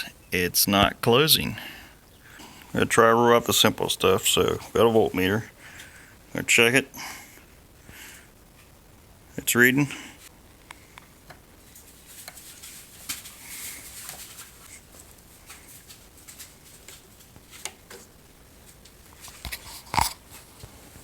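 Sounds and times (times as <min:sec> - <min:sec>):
light clicks and rustles of handling: 0:10.2 - 0:21.0.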